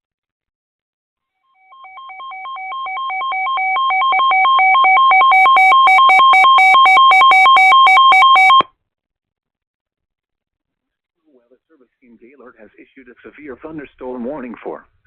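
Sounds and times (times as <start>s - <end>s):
two-tone alert beep: 1.7s - 8.7s.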